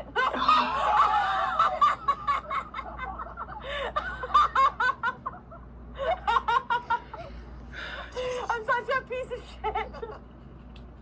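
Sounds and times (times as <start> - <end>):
person laughing hard: 0.2 - 2.5.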